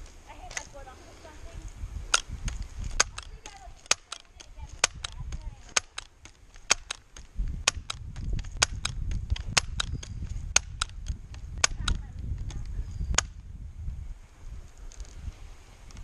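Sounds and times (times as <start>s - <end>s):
bb gun firing: 2.1s - 12.0s.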